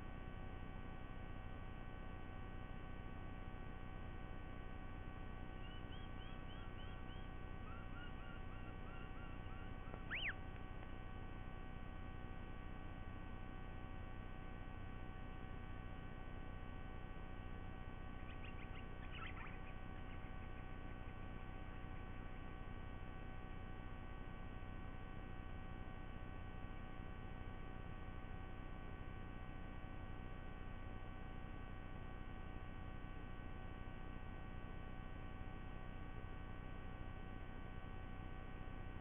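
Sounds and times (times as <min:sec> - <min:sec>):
electrical hum and hiss: 0:00.0 - 0:39.0
faint high chirps: 0:05.5 - 0:10.6, 0:18.2 - 0:21.2.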